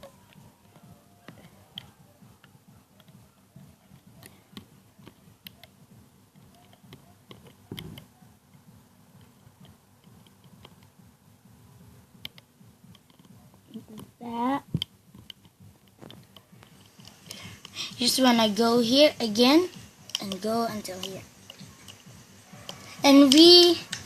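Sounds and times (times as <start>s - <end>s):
hook clicking on rubber bands: 0.3s - 3.2s, 12.1s - 17.8s, 19.6s - 24.0s.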